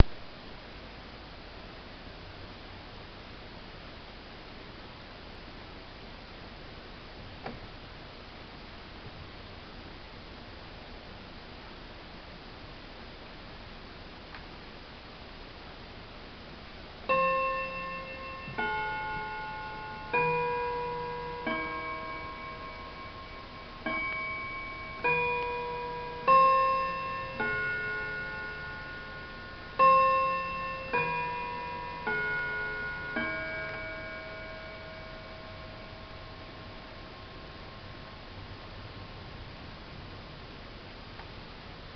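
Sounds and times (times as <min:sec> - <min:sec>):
chime clock ringing notes: 0:17.1 - 0:38.4.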